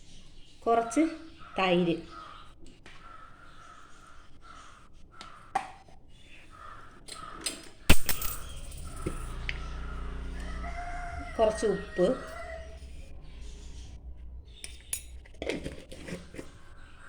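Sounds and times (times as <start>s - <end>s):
crows cawing: 2.1s - 5.6s, 6.4s - 7.6s, 9.8s - 12.8s
low hum: 7.9s - 15.9s.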